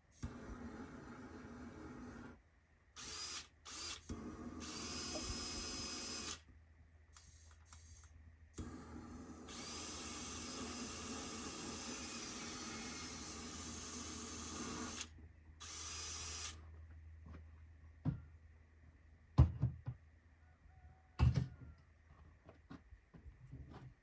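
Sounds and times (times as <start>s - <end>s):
handheld tool hissing: 3.0s - 6.4s, 9.5s - 16.6s.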